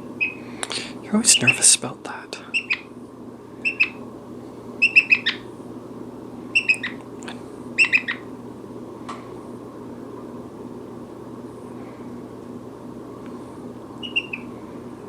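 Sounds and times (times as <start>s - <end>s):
parrot chirping: 0.1s - 0.5s, 2.5s - 2.9s, 3.6s - 4.0s, 4.8s - 5.5s, 6.5s - 7.0s, 7.8s - 8.3s, 14.0s - 14.5s.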